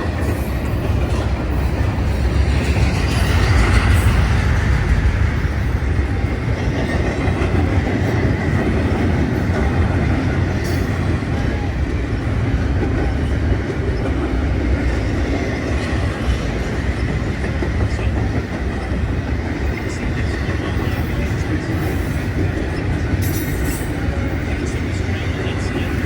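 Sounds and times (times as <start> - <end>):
train wheels rumbling on rails: 0.0 - 26.0.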